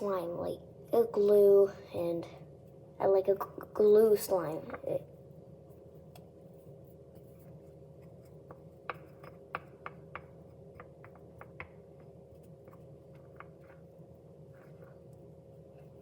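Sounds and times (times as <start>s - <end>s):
faint steady hum: 0.0s - 16.0s
wooden stick tapping a bowl: 8.2s - 13.8s.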